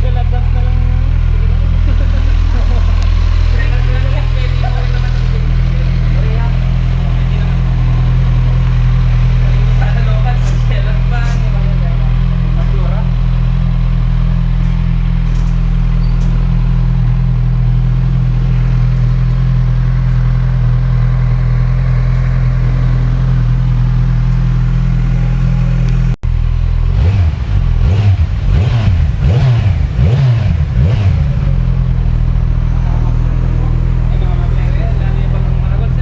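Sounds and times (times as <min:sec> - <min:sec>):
motorcycle engine idling and revving: 0:00.0 - 0:36.0.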